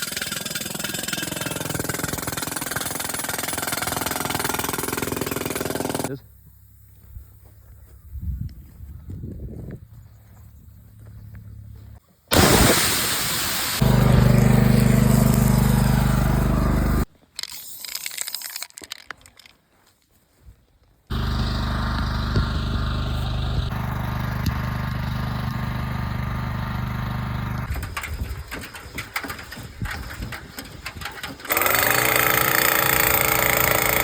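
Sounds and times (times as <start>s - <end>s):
loud burst of noise: 12.3s - 17.0s
engine running steadily: 13.8s - 17.1s, 21.1s - 27.7s.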